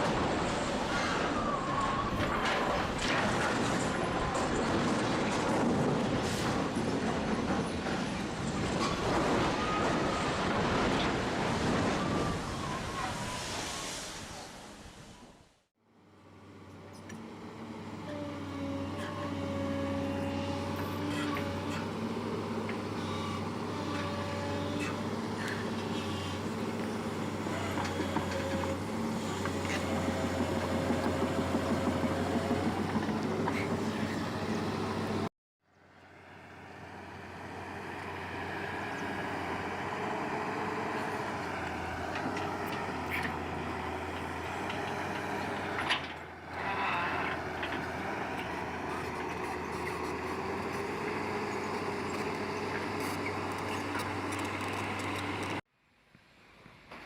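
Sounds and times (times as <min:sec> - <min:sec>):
construction machinery engine running: 0:15.9 - 0:55.6.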